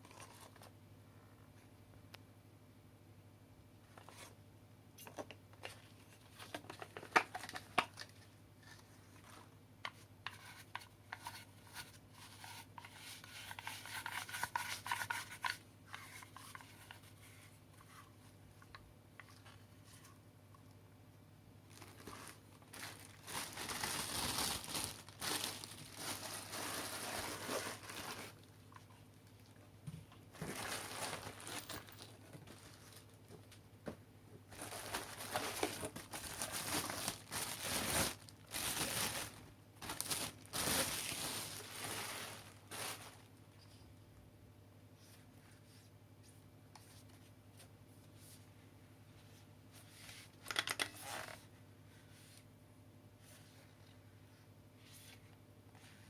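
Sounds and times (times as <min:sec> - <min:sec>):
packaging crinkling and rustling: 0:05.1 - 0:09.5, 0:21.7 - 0:29.5, 0:30.3 - 0:33.6, 0:34.5 - 0:43.3.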